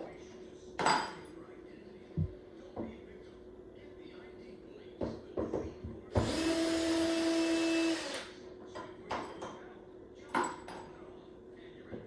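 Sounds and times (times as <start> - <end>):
power drill running: 6.2 - 8.3.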